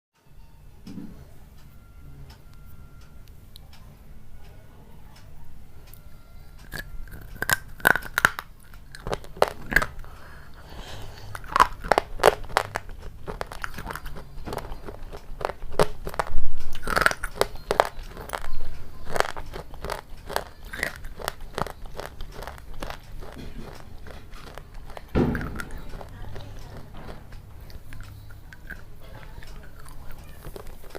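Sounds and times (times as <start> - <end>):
person chewing crunchy food: 6.6 - 30.9.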